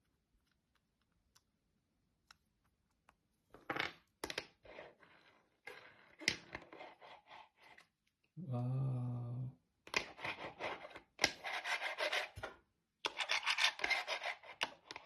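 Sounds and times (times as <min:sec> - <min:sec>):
fingerboard clicks and scrapes: 0:04.4 - 0:07.9, 0:09.9 - 0:15.0.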